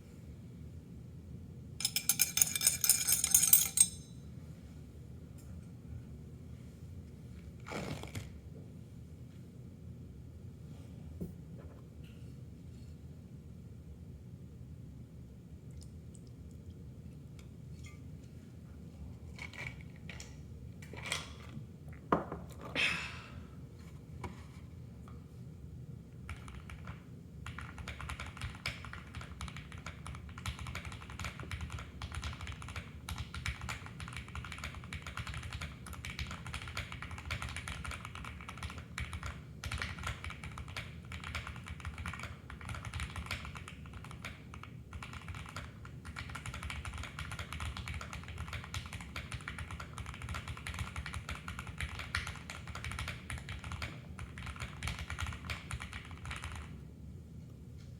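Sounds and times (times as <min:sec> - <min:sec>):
mechanical keyboard typing: 0:26.2 - 0:56.7.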